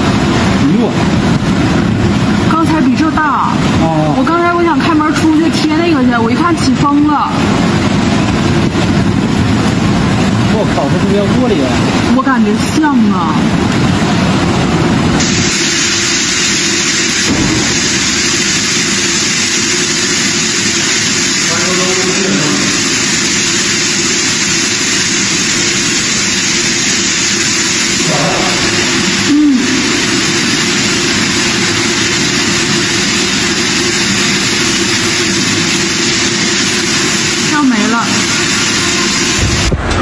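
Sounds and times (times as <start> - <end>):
tornado wind rushing: 0.0 - 40.0
harsh high hiss: 15.1 - 39.8.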